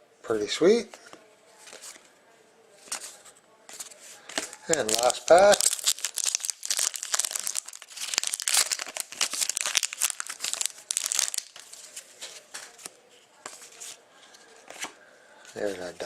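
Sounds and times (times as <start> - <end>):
cards being handled: 2.8 - 16.0
card pack wrapper crinkling: 4.4 - 12.0.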